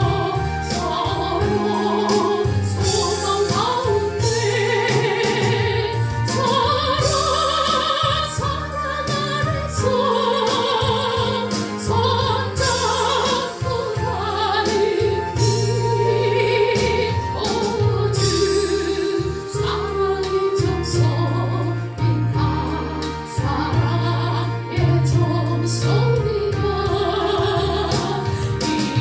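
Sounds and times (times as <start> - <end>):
sustained instrumental accompaniment: 0.0 - 29.0.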